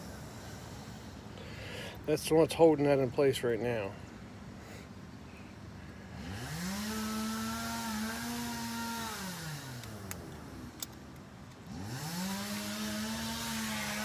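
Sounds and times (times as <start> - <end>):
small motor spinning: 11.6 - 14.0.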